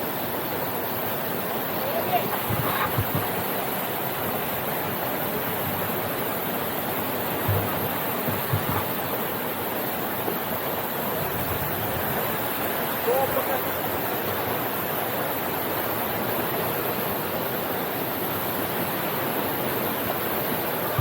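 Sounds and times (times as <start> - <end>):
flowing water rushing: 0.0 - 21.0
short low thumps: 7.4 - 8.9.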